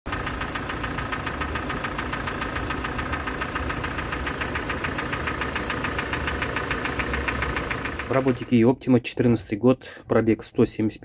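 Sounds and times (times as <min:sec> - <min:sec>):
car engine idling with knock: 0:00.1 - 0:08.5.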